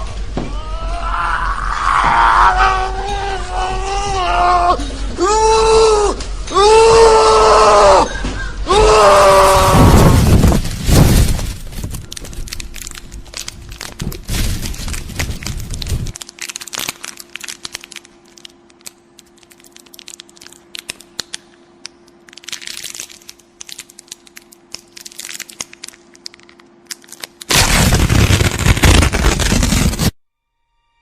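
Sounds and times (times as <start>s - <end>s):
faint hum: 0.0s - 30.2s
harsh noise burst: 27.5s - 30.2s.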